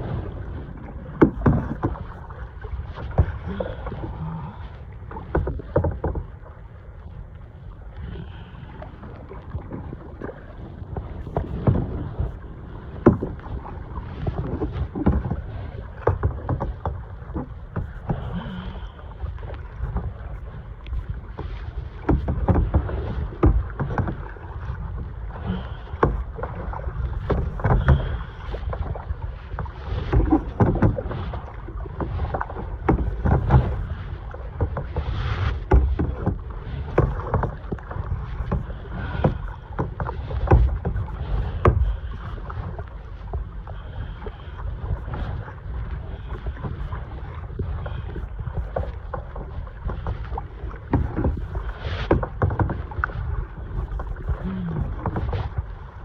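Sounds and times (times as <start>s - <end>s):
water sloshing against hull: 0.0s - 56.0s
wind rumble on microphone: 0.0s - 56.0s
knocks on hull: 1.1s - 2.2s, 3.1s - 3.4s, 5.2s - 6.4s, 13.0s - 13.4s, 14.6s - 15.4s, 16.0s - 18.8s, 22.0s - 24.3s, 25.6s - 26.3s, 27.2s - 28.9s, 30.1s - 31.1s, 32.6s - 33.9s, 35.6s - 42.1s, 50.8s - 52.9s.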